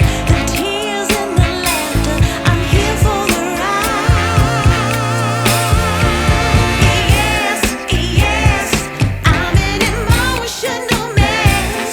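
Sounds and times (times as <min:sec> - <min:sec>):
drums: 0:00.0 - 0:11.9
person singing with vibrato: 0:00.0 - 0:11.9.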